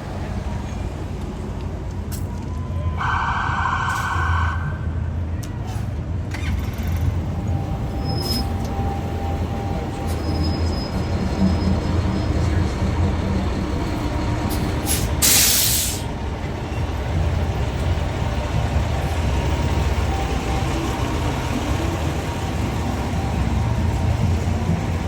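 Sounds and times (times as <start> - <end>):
bus engine idling: 0.0 - 25.0
air brake hiss: 14.5 - 16.1.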